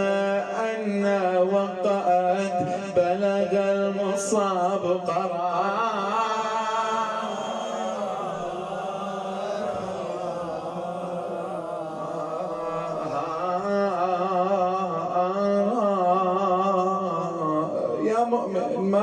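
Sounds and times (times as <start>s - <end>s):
man chanting: 0.0s - 19.0s.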